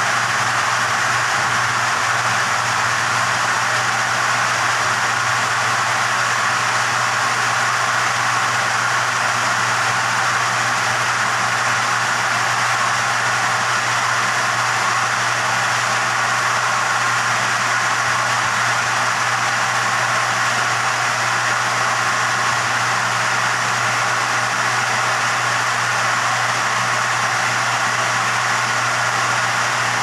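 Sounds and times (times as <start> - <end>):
machine running hum and hiss: 0.0 - 30.0.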